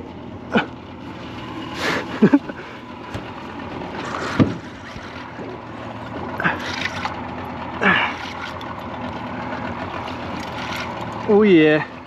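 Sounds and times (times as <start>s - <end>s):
boat motor running: 0.0s - 12.0s.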